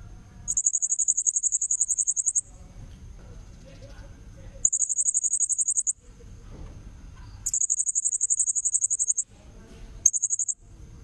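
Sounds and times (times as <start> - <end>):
parrot calling in high pulsed trills: 0.5 - 2.4, 4.7 - 6.0, 7.4 - 9.2, 10.1 - 10.6.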